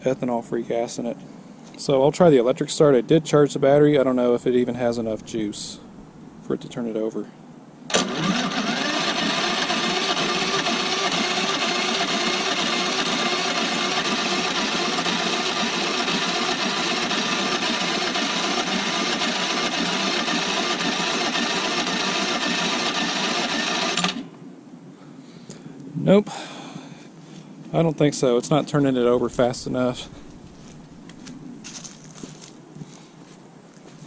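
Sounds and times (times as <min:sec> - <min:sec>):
electric starter cranking engine: 0:07.9 - 0:24.3.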